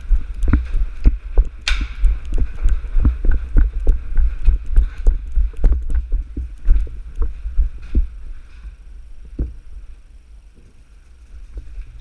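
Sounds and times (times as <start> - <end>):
wind on microphone: 0.0 - 8.4
thudding footsteps: 0.0 - 9.8.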